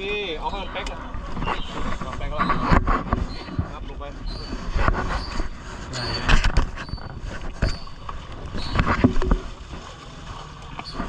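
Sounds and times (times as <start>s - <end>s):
boat hull knocks and scrapes: 0.1s - 11.0s
short squeaks: 1.4s - 3.6s, 4.2s - 9.4s.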